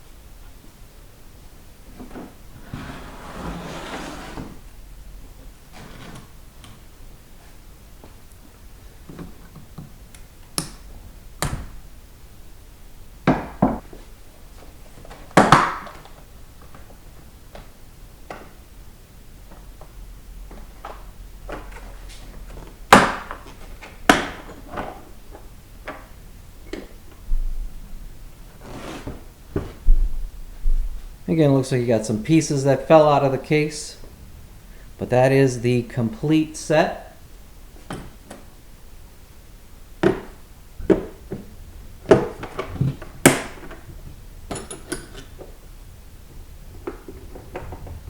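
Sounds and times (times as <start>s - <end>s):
tool scraping: 2.6s - 4.6s, 28.6s - 29.2s.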